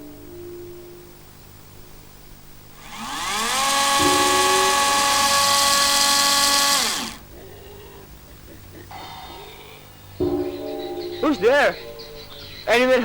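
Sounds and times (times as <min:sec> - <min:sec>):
power drill motor whining: 0:02.8 - 0:07.2.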